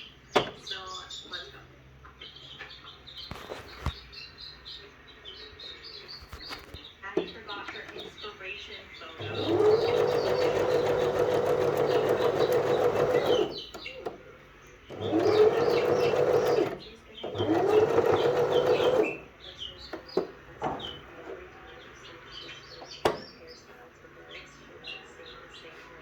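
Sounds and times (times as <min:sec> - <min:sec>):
sewing machine stitching: 0:09.2 - 0:14.2, 0:14.9 - 0:21.4.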